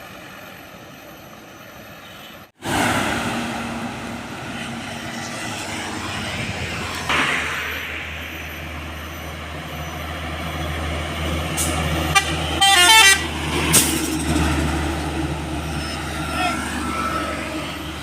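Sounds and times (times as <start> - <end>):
truck engine running: 2.6 - 18.0
horn notes: 11.6 - 13.3.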